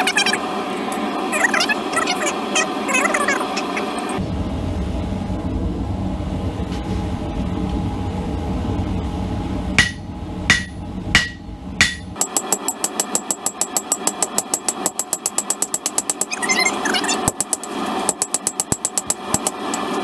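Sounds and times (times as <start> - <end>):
hammer ringing on steel: 9.8 - 12.4
light rapid hammer strikes: 9.8 - 16.4.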